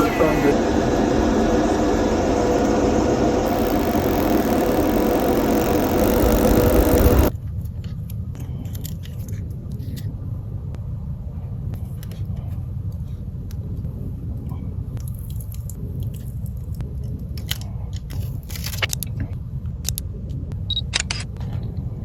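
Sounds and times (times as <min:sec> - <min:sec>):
motorised tool humming and hissing: 0:00.0 - 0:07.3.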